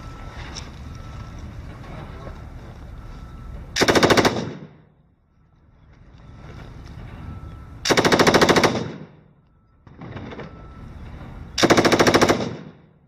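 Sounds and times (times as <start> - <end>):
machine gun automatic fire: 3.8 - 4.7, 7.9 - 9.2, 11.6 - 12.8.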